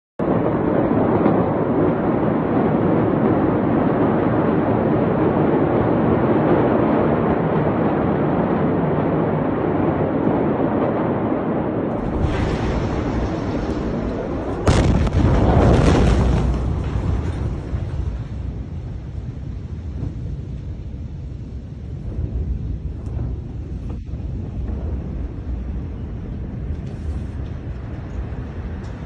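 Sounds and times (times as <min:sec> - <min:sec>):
explosion blast: 0:00.2 - 0:29.0
loud rushing noise: 0:11.9 - 0:19.4.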